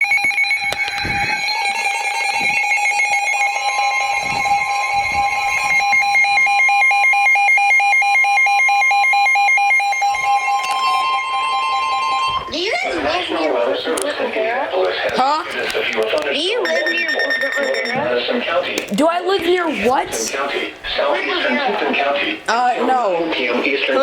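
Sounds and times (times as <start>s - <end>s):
electronic alarm beeping: 0.0s - 12.6s, 16.5s - 18.5s
steady electronic tone: 16.6s - 18.2s.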